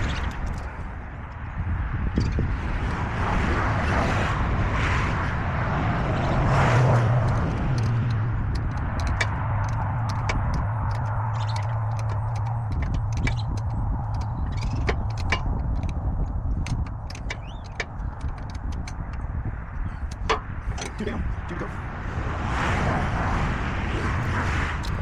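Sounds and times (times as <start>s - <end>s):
engine humming: 4.3s - 25.0s
light clicks and taps: 7.2s - 21.7s.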